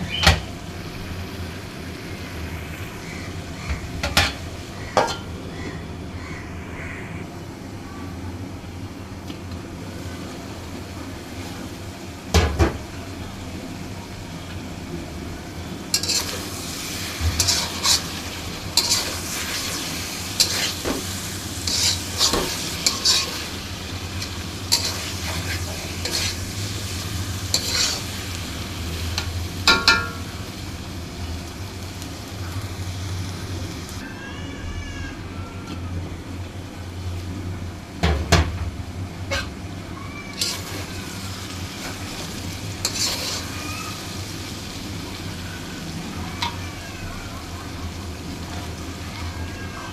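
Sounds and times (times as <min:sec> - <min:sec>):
food sizzling in a pan: 0:00.0 - 0:06.7, 0:09.8 - 0:34.2, 0:39.1 - 0:49.9
spatula scraping a pan: 0:15.9 - 0:16.5, 0:17.2 - 0:23.6, 0:24.2 - 0:26.5, 0:27.5 - 0:28.1, 0:39.3 - 0:39.6, 0:40.3 - 0:40.9, 0:41.8 - 0:44.0.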